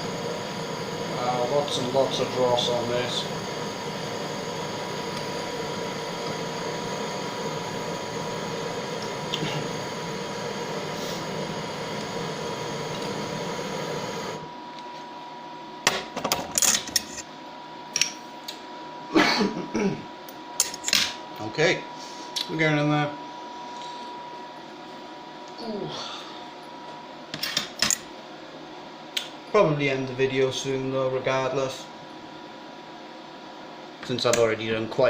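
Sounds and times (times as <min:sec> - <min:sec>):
steady hiss: 0:00.0 - 0:14.5.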